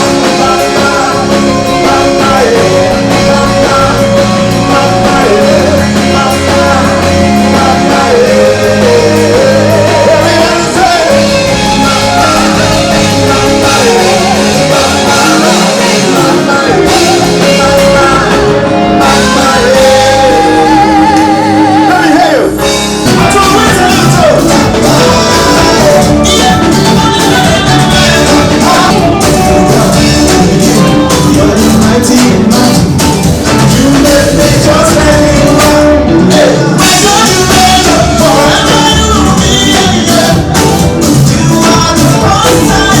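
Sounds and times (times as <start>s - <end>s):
band playing gospel song: 0.0s - 43.0s
lead vocal singing: 0.0s - 43.0s.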